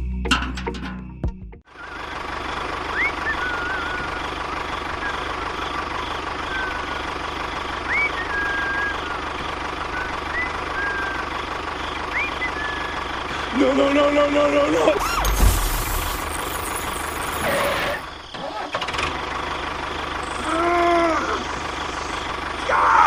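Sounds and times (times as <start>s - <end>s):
music: 0.0s - 1.6s
short rising whistles: 2.8s - 4.4s, 6.4s - 7.1s, 7.8s - 13.1s.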